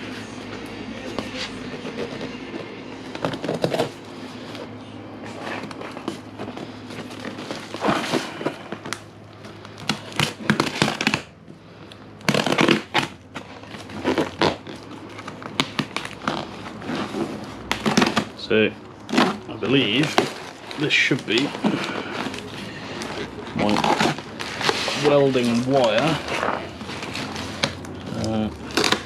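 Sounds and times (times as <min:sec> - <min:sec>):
packing crinkling and tearing: 0:00.0 - 0:29.0
cardboard box being opened: 0:01.1 - 0:04.6, 0:05.3 - 0:09.0, 0:19.1 - 0:29.0.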